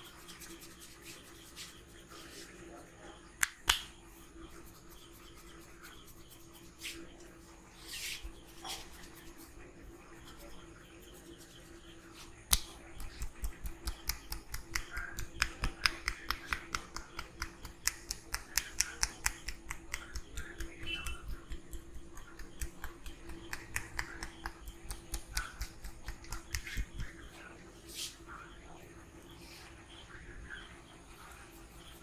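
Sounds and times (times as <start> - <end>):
hands slapping and clapping: 3.4 - 4.0, 12.4 - 27.2.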